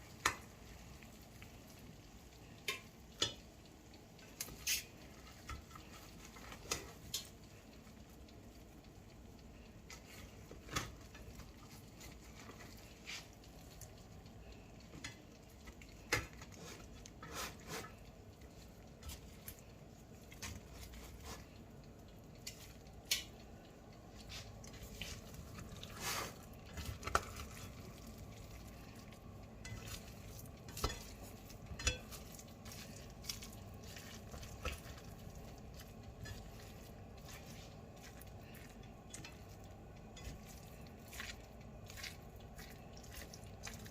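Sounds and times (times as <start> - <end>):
faint steady hiss: 0.0 - 43.9
utensil clinking against pot: 29.6 - 32.4.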